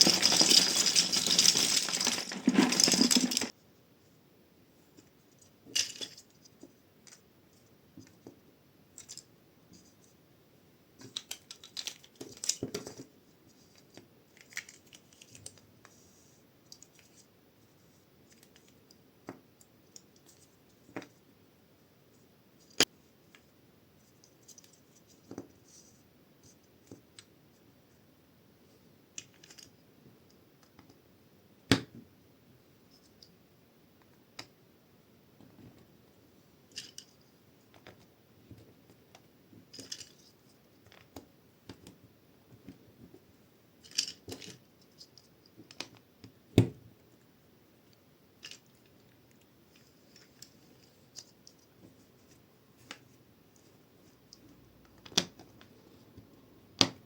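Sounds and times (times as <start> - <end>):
plastic bricks clicking and rattling: 0.0 - 3.5.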